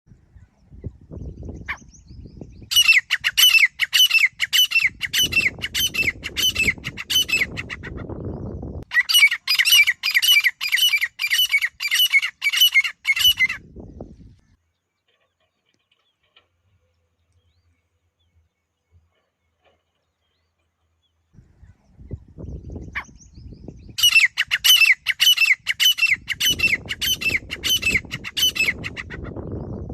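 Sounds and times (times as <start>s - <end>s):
bird calling shrill notes: 2.6s - 7.8s, 8.8s - 13.6s, 22.9s - 29.2s.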